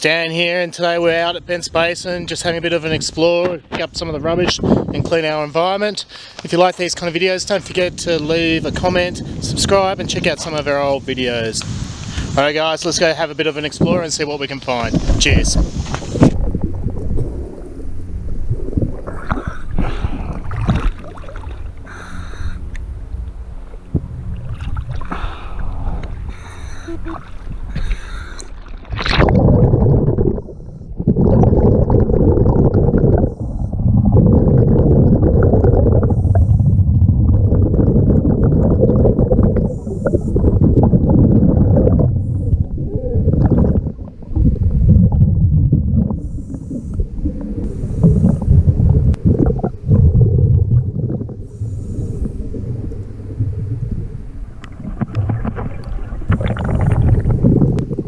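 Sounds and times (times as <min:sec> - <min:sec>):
regulator hiss on in-breath: 0:11.6 - 0:12.4, 0:51.4 - 0:52.5
rumbling exhaled bubbles: 0:14.7 - 0:22.7, 0:23.6 - 0:58.0.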